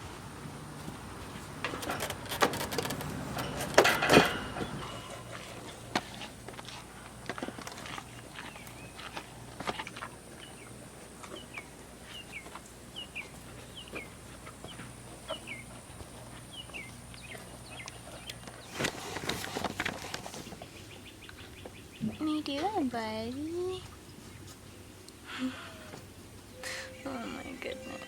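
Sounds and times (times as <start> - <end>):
loud rustling handling noise: 18.4 - 20.7.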